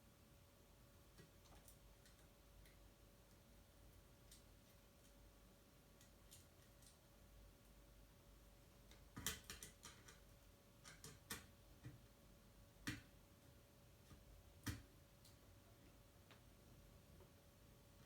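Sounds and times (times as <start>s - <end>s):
small clicks and taps: 1.1s - 5.2s, 6.0s - 7.0s, 8.8s - 12.1s, 12.8s - 13.1s, 14.0s - 15.4s.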